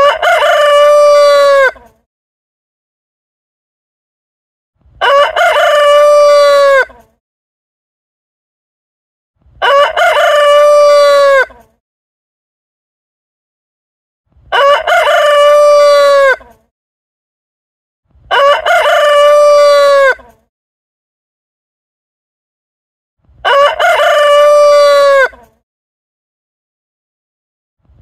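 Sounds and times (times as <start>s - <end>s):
rooster crowing: 0.0s - 1.8s, 5.0s - 7.0s, 9.6s - 11.5s, 14.5s - 16.5s, 18.3s - 20.3s, 23.4s - 25.4s.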